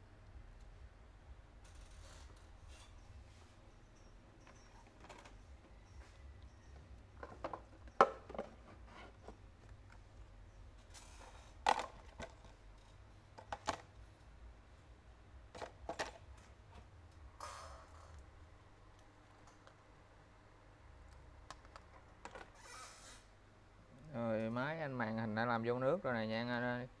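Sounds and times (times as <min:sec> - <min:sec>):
faint low hum: 0:00.0 - 0:22.4
metal tools clinking on surface: 0:01.8 - 0:08.0.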